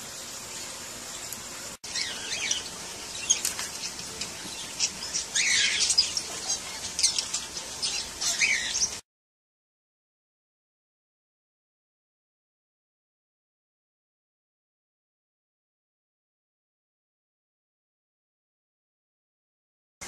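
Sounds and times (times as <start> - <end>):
steady hiss: 0.0 - 9.0
parrot chirping and squawking: 1.8 - 9.0.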